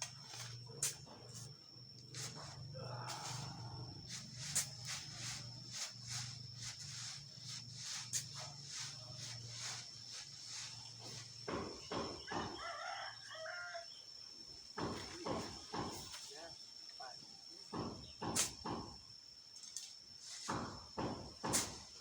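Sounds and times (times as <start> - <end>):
sand swishing in sieve: 2.1 - 11.5, 20.2 - 20.8, 21.5 - 22.0
rooster crowing: 12.1 - 14.0.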